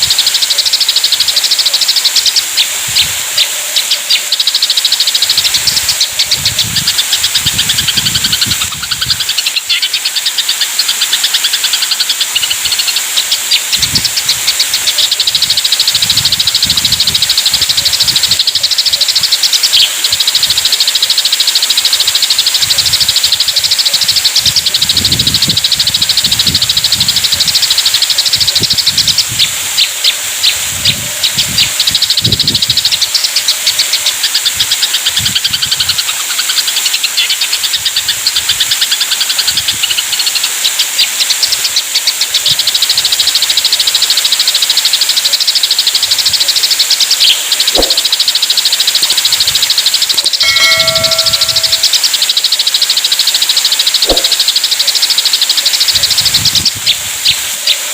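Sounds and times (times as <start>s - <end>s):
sparrows chirping: 0.0s - 57.9s
short multi-pitch tone: 50.2s - 52.6s.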